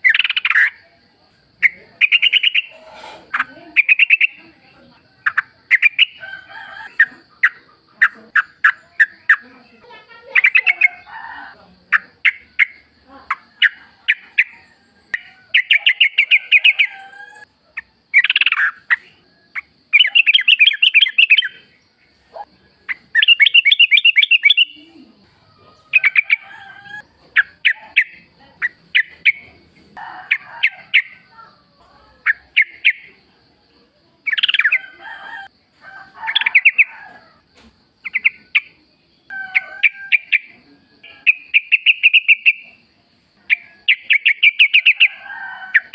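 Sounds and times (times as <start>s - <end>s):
bird chattering calls: 0.0s - 0.8s, 1.6s - 4.4s, 5.2s - 6.2s, 7.0s - 9.5s, 10.3s - 11.0s, 15.2s - 17.0s, 17.8s - 21.7s, 22.9s - 24.9s, 38.0s - 38.8s, 39.6s - 42.8s, 43.5s - 45.2s.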